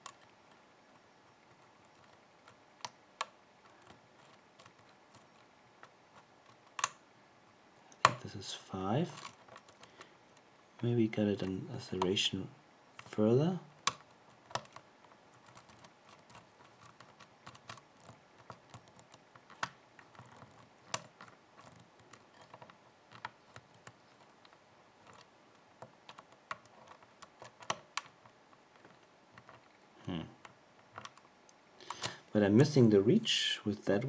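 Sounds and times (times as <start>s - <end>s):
lock pick clicking and scraping: 0.0s - 0.6s, 1.4s - 7.0s, 9.0s - 10.5s, 13.0s - 29.8s, 30.4s - 31.3s.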